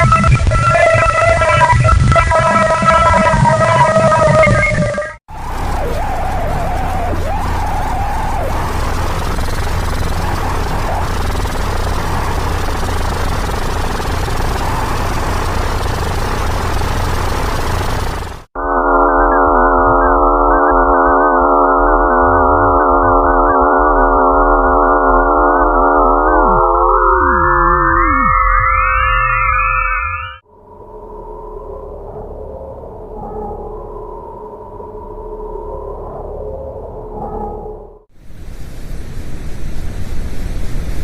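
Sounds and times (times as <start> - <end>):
dense rushing roar: 0.0 - 18.5
dense electronic drone: 0.0 - 40.4.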